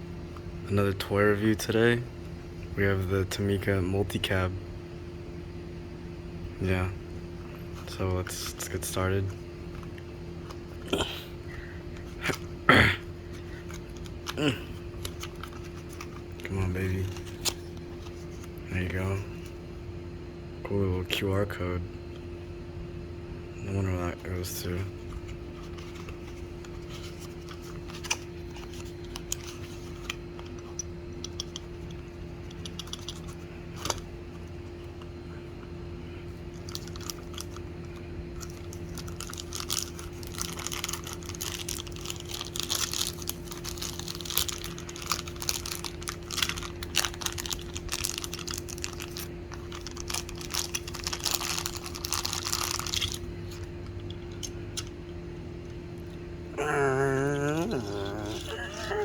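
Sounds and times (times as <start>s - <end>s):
packaging crinkling and rustling: 13.2s - 18.5s, 25.1s - 34.6s, 36.4s - 54.5s.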